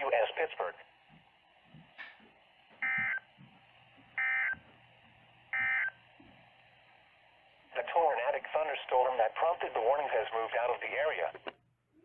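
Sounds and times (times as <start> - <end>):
two-tone digital data bursts: 5.6 - 6.0.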